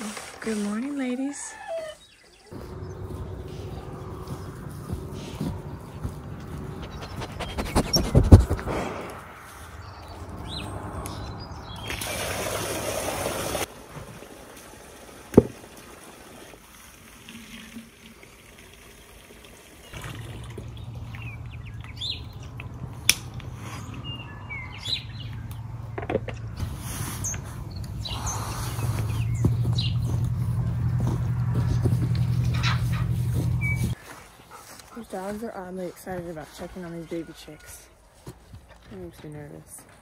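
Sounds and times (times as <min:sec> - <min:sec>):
water pouring: 0:11.9 - 0:21.6.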